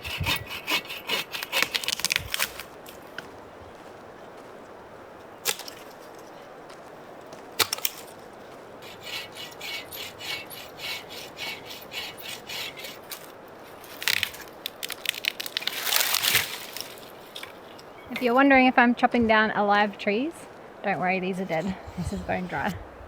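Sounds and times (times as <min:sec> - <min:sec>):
saw cutting wood: 0:00.0 - 0:02.7, 0:08.8 - 0:18.3, 0:21.2 - 0:22.8
wood cracking: 0:00.0 - 0:04.5, 0:05.3 - 0:06.4, 0:07.2 - 0:18.4.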